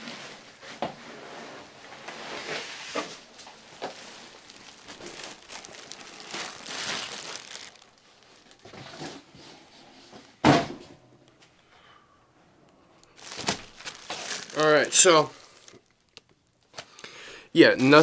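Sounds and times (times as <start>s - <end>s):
packaging rustling: 2.4s - 9.3s, 13.0s - 17.0s.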